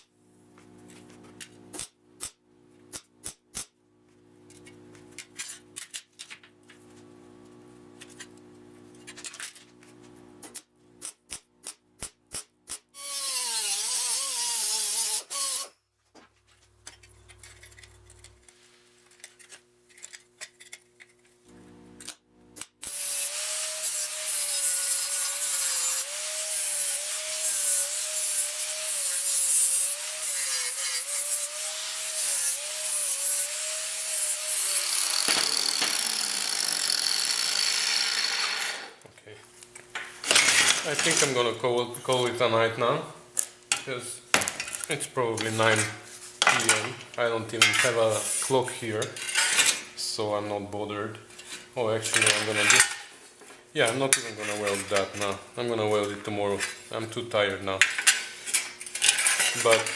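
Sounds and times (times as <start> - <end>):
power grinder on sheet steel: 13.0 - 15.7, 22.8 - 39.0
grinder disc spinning down: 34.1 - 39.0.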